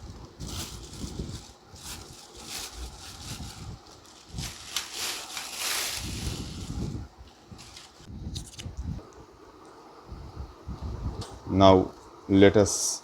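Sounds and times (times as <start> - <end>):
packaging rustling: 0.3 - 8.1.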